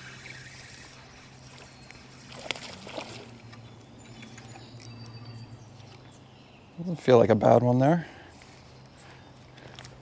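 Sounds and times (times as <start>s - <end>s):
river water sloshing: 0.0s - 4.6s.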